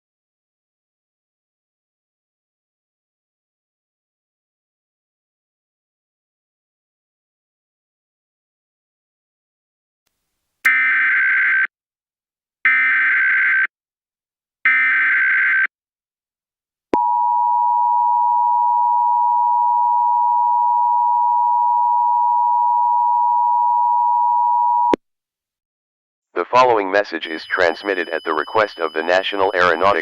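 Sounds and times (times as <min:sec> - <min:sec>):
digital data tone bursts: 0:27.2 - 0:30.0
two-tone attention signal: 0:27.4 - 0:30.0.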